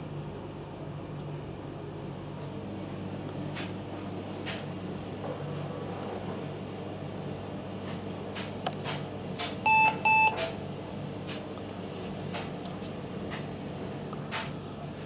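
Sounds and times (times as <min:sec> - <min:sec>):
computer fans humming: 0:00.0 - 0:15.0
short electronic beeps: 0:09.7 - 0:10.5.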